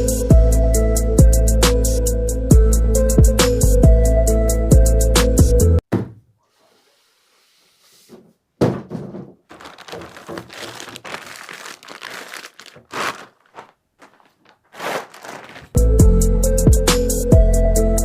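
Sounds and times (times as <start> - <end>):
thuds and knocks: 8.6 - 9.5
wrapping crinkling and rustling: 9.5 - 15.8.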